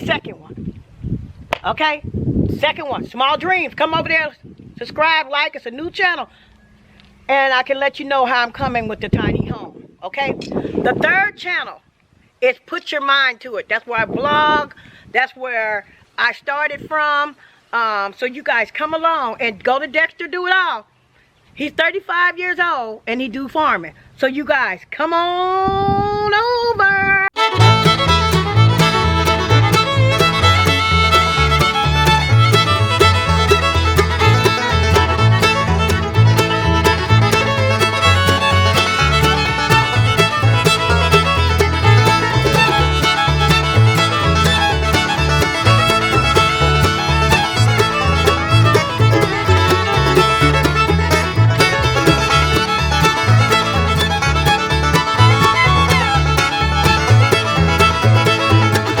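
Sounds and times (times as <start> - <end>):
bluegrass music with fiddle and banjo: 27.4 - 59.0.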